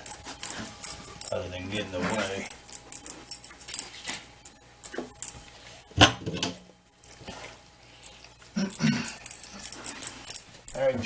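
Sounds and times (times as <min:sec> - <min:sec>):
light metallic jingling clicks: 0:00.0 - 0:05.5, 0:08.0 - 0:11.0
puppy moving about: 0:00.0 - 0:05.7.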